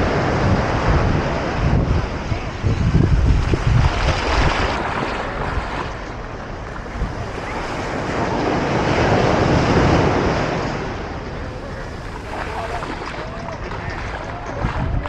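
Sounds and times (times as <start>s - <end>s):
ocean surf washing on beach: 0.0s - 15.0s
wind buffeting microphone: 0.0s - 15.0s.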